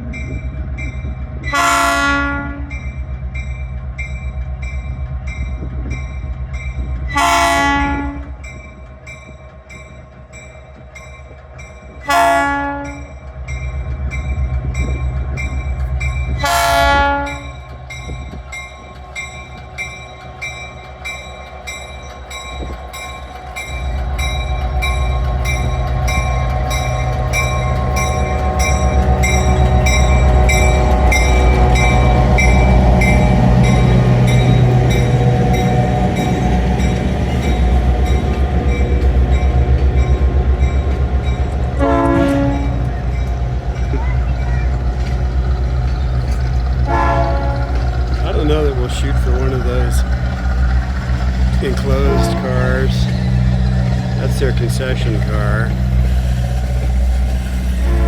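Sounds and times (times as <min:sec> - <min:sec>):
diesel locomotive engine running: 0:00.0 - 0:58.0
locomotive horn blasts: 0:01.5 - 0:02.8, 0:07.1 - 0:08.4, 0:12.1 - 0:13.1, 0:16.4 - 0:17.5, 0:41.8 - 0:42.9, 0:46.9 - 0:48.5, 0:51.6 - 0:53.1, 0:57.8 - 0:58.0
bell ringing steadily: 0:17.1 - 0:46.3.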